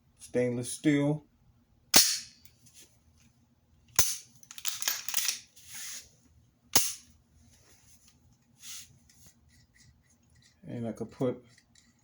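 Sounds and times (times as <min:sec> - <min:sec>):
pistol metallic clacks: 0:06.8 - 0:07.0.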